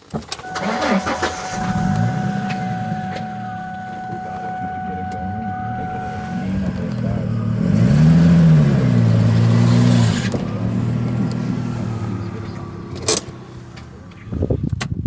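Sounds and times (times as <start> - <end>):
car engine running: 0.0 - 14.6.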